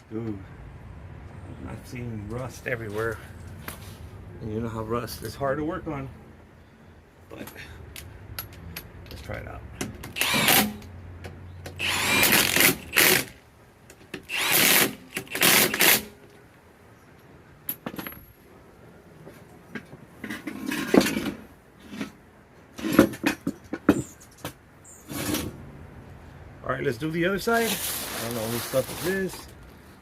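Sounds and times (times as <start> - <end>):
power tool bursts: 10.2 - 10.8, 11.8 - 13.4, 14.3 - 16.1.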